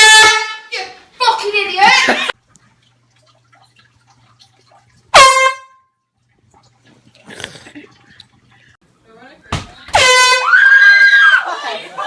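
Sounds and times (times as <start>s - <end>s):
air horn blast: 0.0s - 0.8s, 5.1s - 5.9s, 9.9s - 10.5s.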